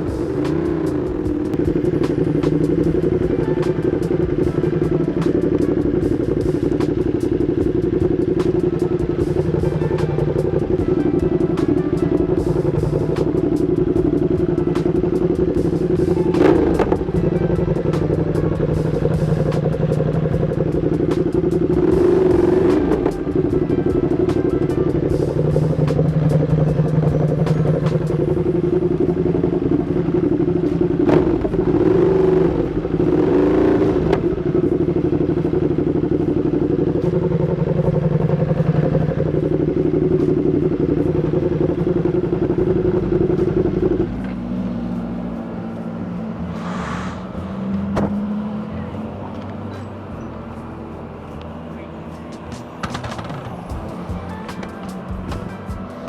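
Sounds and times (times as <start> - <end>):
motorcycle engine running: 0.0 - 56.0.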